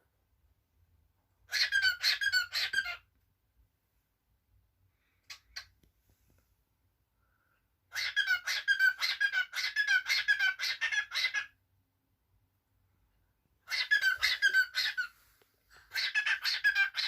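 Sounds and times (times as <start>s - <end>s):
cockatiel chirping: 1.5s - 3.0s, 7.9s - 11.6s, 13.6s - 17.0s.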